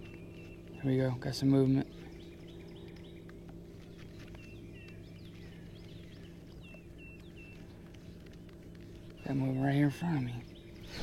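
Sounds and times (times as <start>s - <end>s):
birds chirping: 0.0s - 11.0s
faint low hum: 0.0s - 11.0s.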